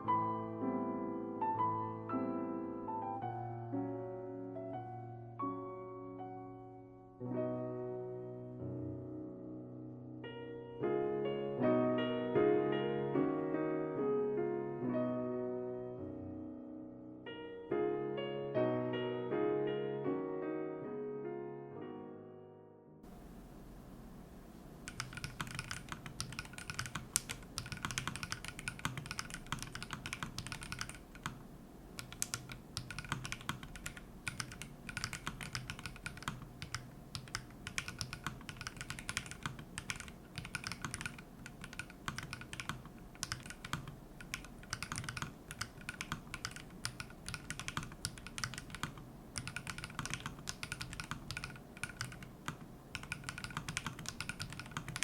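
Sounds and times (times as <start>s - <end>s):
mechanical keyboard typing clicks: 24.9s - 31.4s, 32.0s - 55.0s.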